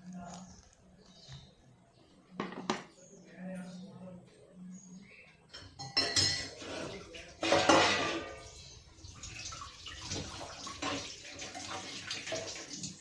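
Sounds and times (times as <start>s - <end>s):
pots and utensils clinking: 5.5s - 13.0s
liquid pouring into metal pot: 7.2s - 13.0s.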